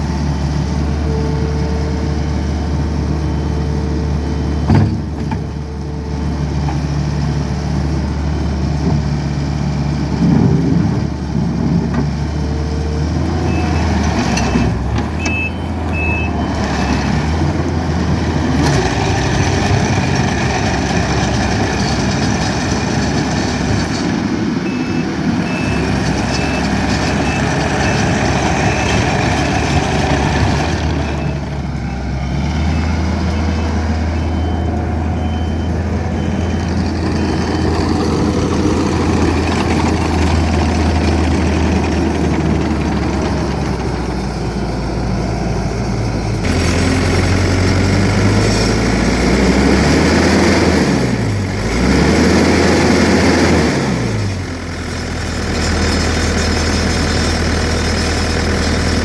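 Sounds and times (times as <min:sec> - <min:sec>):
diesel engine running: 0:00.0 - 0:59.0
backup alarm beeping: 0:13.4 - 0:17.3, 0:24.6 - 0:39.1.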